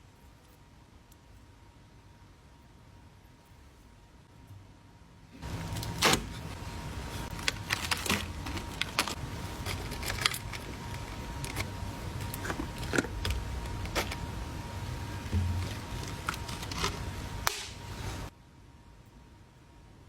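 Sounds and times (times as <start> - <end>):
faint high hum: 0.0 - 20.0
packaging clicks taps and rustles: 7.3 - 14.3.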